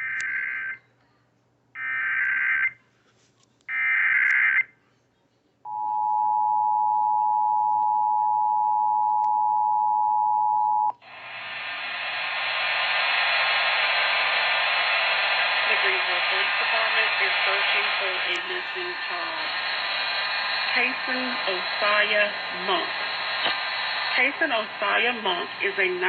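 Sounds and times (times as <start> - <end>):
radio hiss: 11.0 - 26.0.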